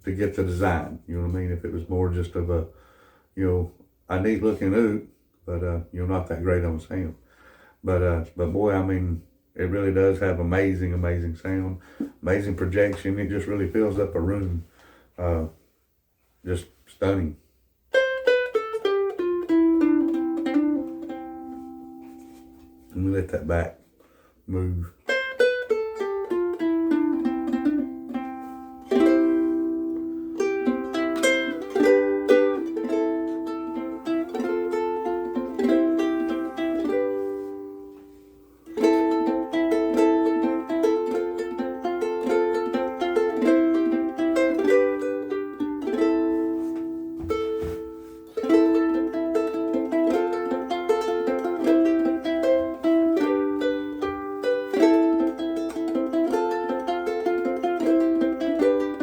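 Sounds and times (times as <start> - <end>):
ukulele playing plucked notes and chords: 17.9 - 23.6, 24.6 - 59.0.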